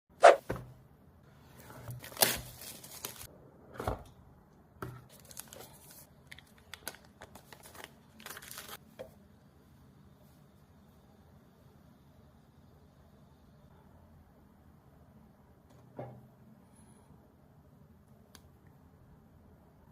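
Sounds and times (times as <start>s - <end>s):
box and wrapping rustling: 1.8s - 3.3s, 5.1s - 8.8s
packaging ripping: 2.0s - 3.3s, 5.1s - 8.8s.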